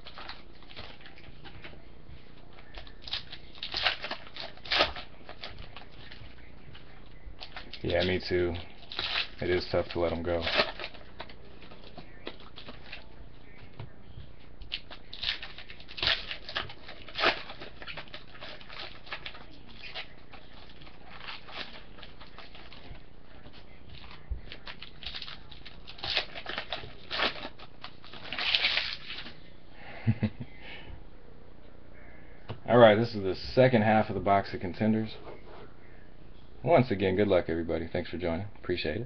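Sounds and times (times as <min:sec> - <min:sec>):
foil wrappers crinkling: 0:00.0 - 0:13.8, 0:14.5 - 0:29.4.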